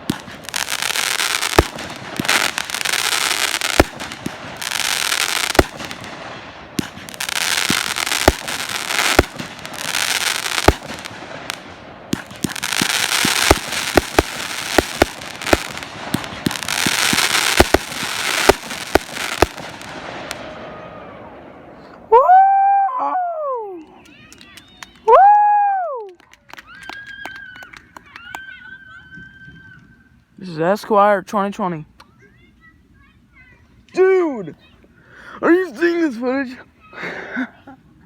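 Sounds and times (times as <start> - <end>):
firework shell bursts: 0.0 - 20.4
crackling firework sizzle: 0.0 - 21.9.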